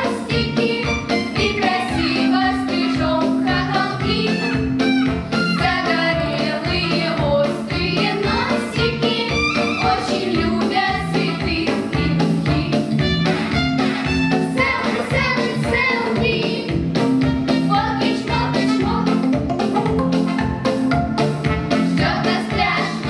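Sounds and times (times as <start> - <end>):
music with bass beat: 18.3 - 23.0.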